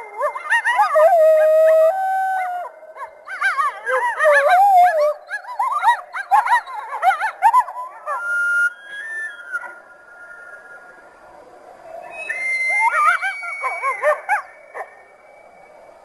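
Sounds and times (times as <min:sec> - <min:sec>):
canine howling: 0:00.0 - 0:09.8, 0:11.9 - 0:15.0
warbling yips: 0:12.1 - 0:14.9.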